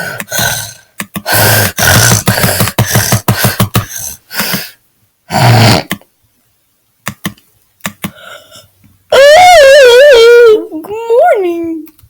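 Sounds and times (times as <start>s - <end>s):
person making harsh throat noises: 0.0s - 6.0s.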